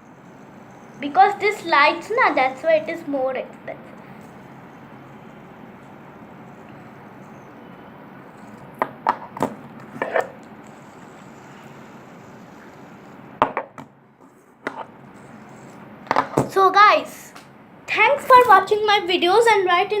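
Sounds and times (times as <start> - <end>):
steady low hiss: 0.0 - 13.4.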